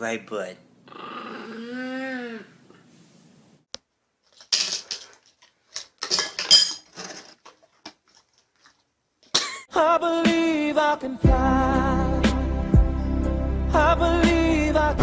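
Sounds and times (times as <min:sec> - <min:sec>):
hard objects clinking: 0:04.3 - 0:08.7.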